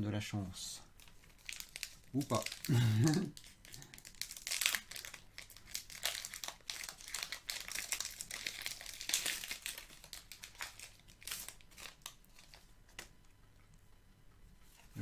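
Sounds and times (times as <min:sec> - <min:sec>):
foil wrapper crinkling: 0:00.9 - 0:13.2.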